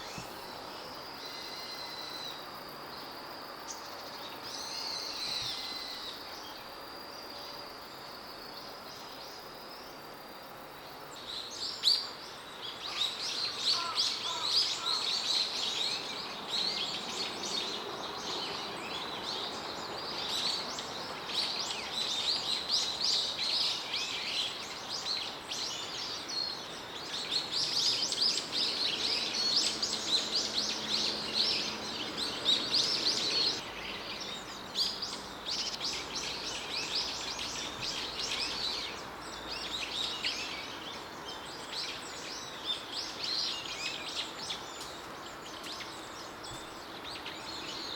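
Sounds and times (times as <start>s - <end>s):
songbird chirps and trills: 0.0s - 47.9s.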